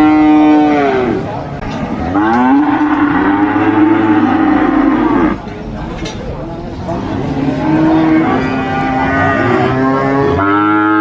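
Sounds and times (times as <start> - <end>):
cattle mooing: 0.0 - 1.2, 2.0 - 5.4, 7.1 - 11.0.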